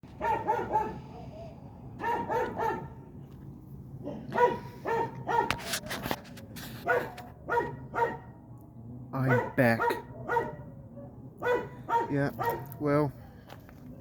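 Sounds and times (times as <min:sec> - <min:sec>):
dog barking: 0:00.2 - 0:03.0, 0:04.0 - 0:05.8, 0:06.8 - 0:08.3, 0:09.2 - 0:13.4.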